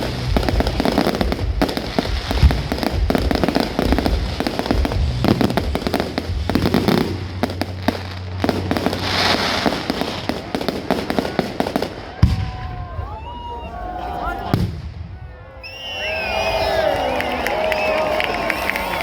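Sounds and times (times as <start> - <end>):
fireworks hiss: 0.0 - 12.4
fireworks crackling and popping: 0.0 - 13.3, 14.5 - 15.2.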